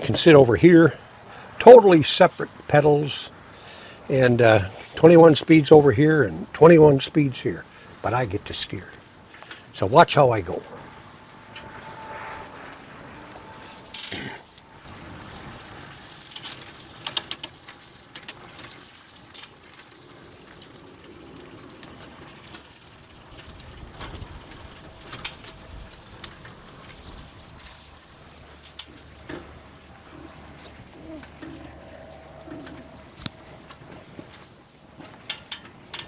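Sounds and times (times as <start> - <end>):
pedal bike rolling rumble: 0.0 - 36.0.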